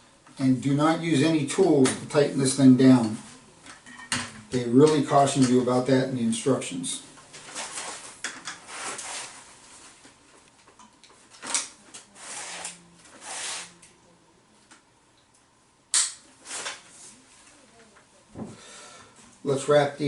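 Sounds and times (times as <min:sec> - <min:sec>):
scraping and rustling: 0:07.2 - 0:10.5, 0:11.9 - 0:13.8.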